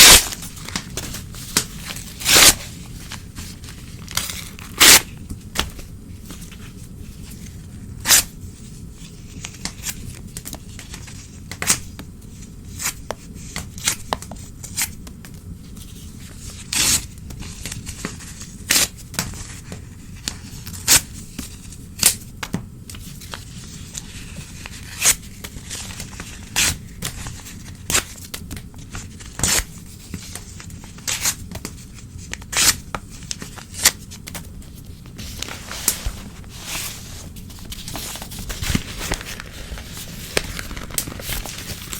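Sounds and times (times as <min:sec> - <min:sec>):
newspaper being torn: 0:00.0 - 0:05.1, 0:35.2 - 0:41.9.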